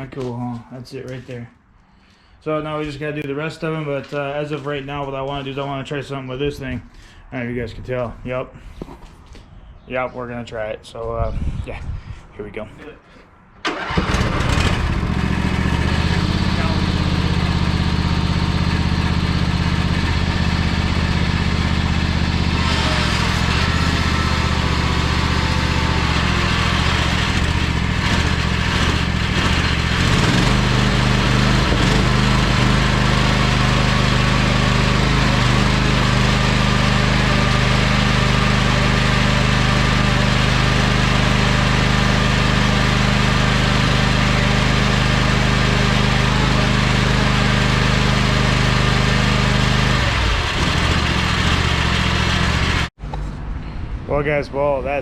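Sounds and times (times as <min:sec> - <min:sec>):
riding mower engine running hard: 0:13.7 - 0:52.9.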